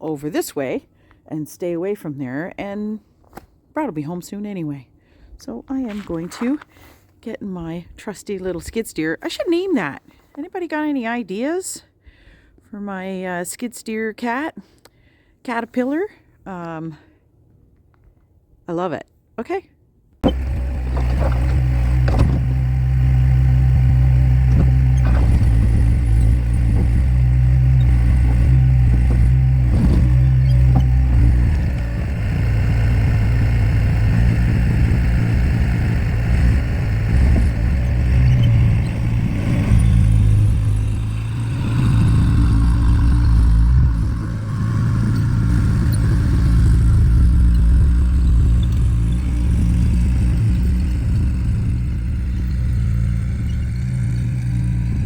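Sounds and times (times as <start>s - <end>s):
skid steer diesel engine running: 20.2s - 55.0s.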